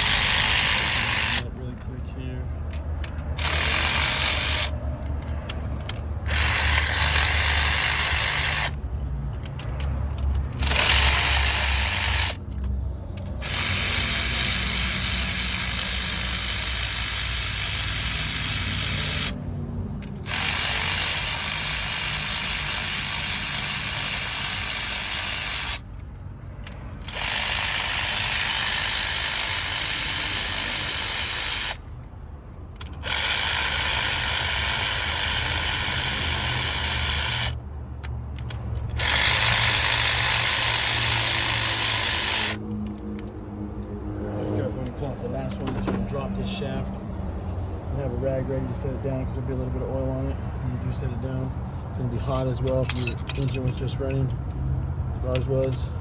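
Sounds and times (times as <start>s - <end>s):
cordless power tool spinning bolts: 0.0s - 1.6s, 2.6s - 32.0s, 32.7s - 43.3s, 52.2s - 54.6s.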